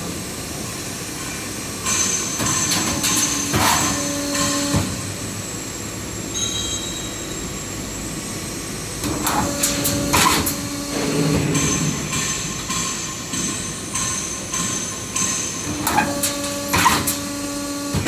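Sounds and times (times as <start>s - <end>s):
machine hum with whine: 0.0s - 18.0s
sharp knocks and hisses: 9.3s - 15.3s.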